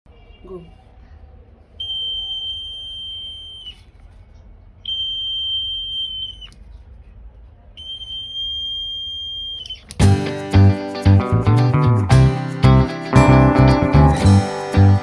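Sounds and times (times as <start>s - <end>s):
strummed guitar music: 10.0s - 15.0s.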